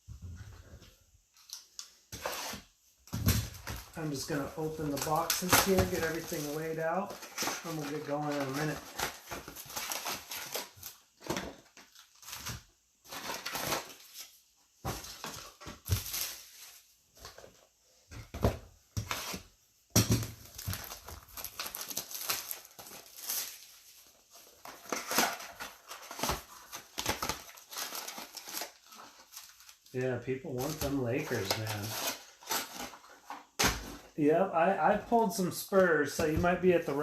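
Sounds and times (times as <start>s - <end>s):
cardboard tearing and rustling: 2.2s - 17.6s, 20.1s - 29.9s, 30.6s - 34.2s
plastic wrap crinkling: 3.4s - 14.4s, 20.2s - 34.1s.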